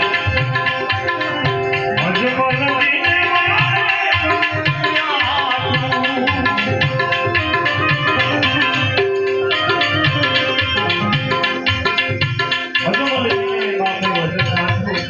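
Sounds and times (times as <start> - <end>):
tabla rhythm: 0.0 - 15.0
sliding melody instrument: 4.1 - 14.9.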